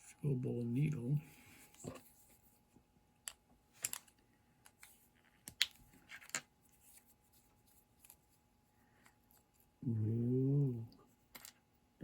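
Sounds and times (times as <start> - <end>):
small parts clicking and tapping: 3.2 - 6.5, 11.3 - 11.7.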